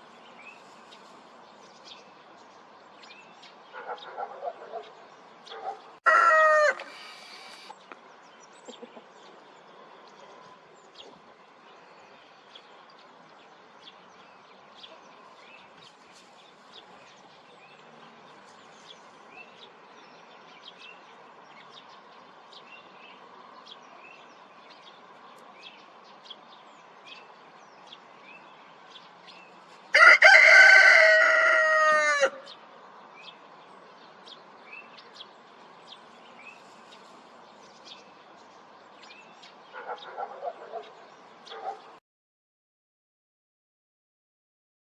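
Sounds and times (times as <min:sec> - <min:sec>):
small birds chirping: 0:00.0 - 0:30.0, 0:31.9 - 0:42.0
rooster crowing: 0:06.0 - 0:07.7, 0:29.9 - 0:32.5.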